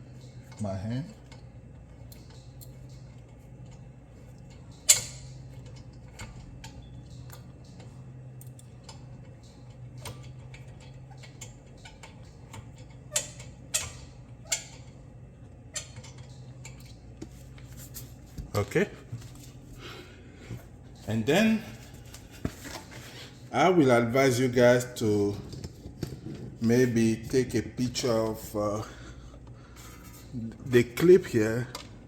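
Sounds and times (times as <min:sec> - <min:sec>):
low steady hum: 0:00.0 - 0:32.0.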